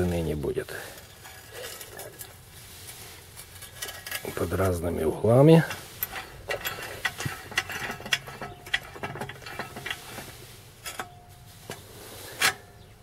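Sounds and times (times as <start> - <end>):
metal saw parts clicking and clunking: 3.6 - 4.8, 5.5 - 13.0.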